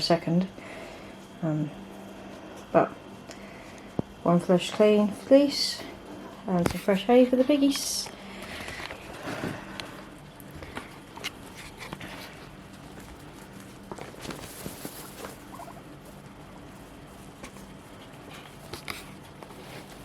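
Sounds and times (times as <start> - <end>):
rustling in hay: 11.4 - 20.0
guinea pig squeak: 14.5 - 15.9.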